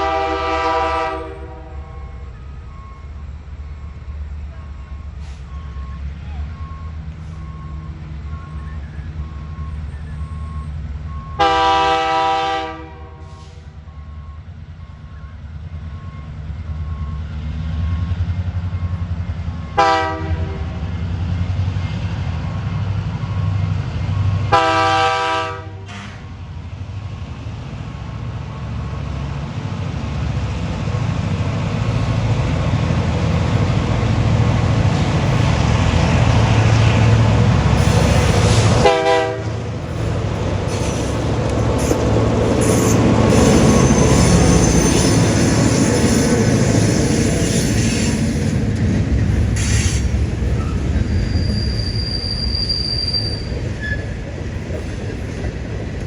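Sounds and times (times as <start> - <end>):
locomotive air horn blasts: 0.0 - 2.2, 11.4 - 13.7, 19.8 - 20.8, 24.5 - 26.3, 37.8 - 40.1
low train engine rumble: 0.0 - 56.0.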